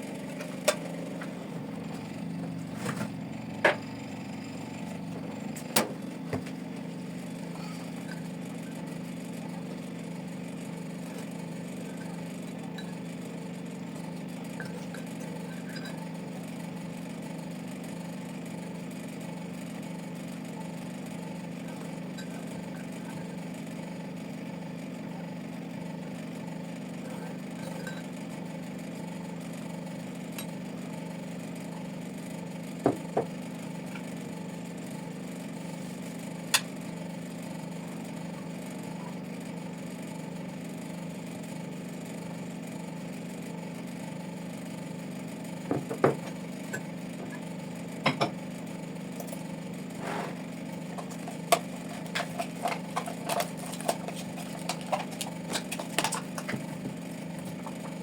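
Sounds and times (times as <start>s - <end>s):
steady low hum: 0.0s - 31.7s
objects clicking and clinking: 51.0s - 56.8s.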